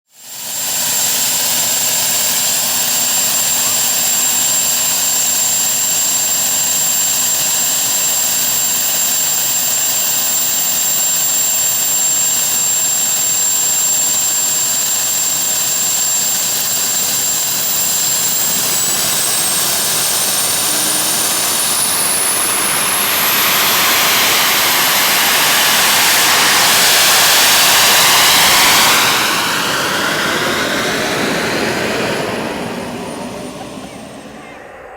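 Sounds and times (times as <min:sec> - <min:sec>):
small jet engine roar and whine: 0:00.1 - 0:34.9.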